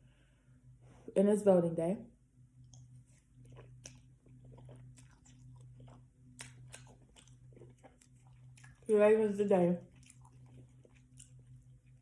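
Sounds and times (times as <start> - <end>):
low steady hum: 0.0 - 12.0
chewing noodles: 2.7 - 12.0.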